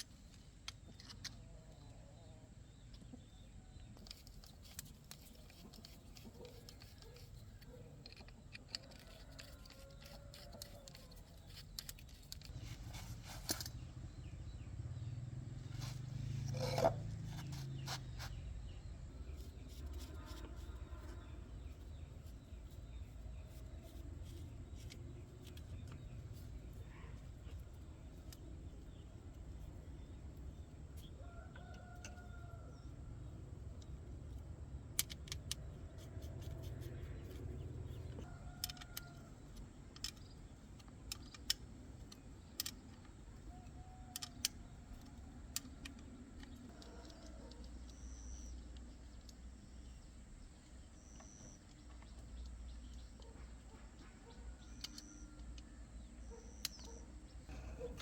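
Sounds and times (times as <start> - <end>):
sharp clicks and knocks: 33.8 - 49.4.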